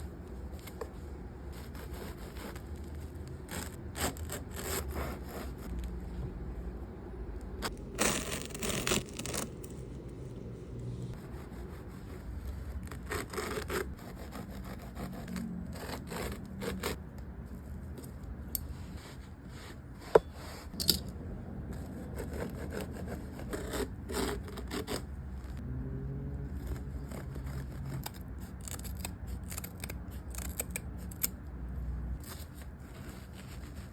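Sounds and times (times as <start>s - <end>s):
low steady rumble: 0.0s - 33.9s
hand tools scraping carpet: 7.6s - 9.7s.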